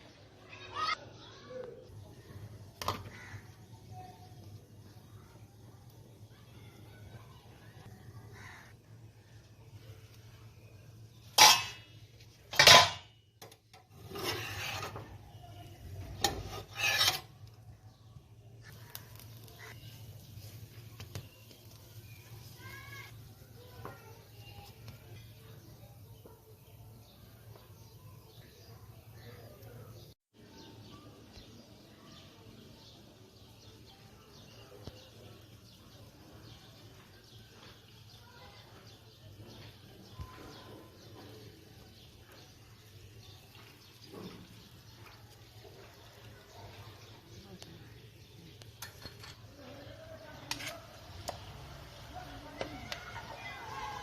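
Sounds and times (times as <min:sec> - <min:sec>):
faint birds chirping: 0:00.0 - 0:54.0
utensil scraping a dish: 0:13.8 - 0:17.6.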